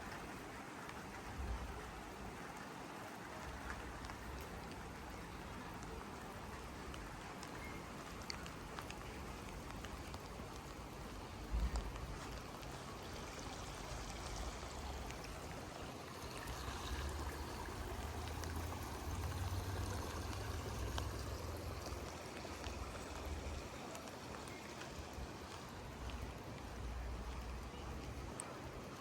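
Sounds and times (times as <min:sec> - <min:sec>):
rain falling: 0:00.0 - 0:29.0.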